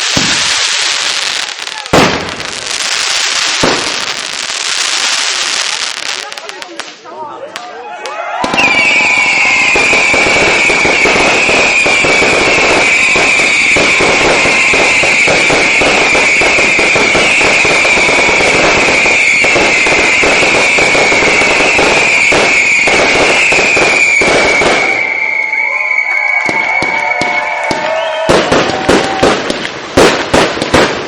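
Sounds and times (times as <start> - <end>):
fireworks crackling and banging: 0.0 - 31.0
high whistling tone: 8.5 - 28.3.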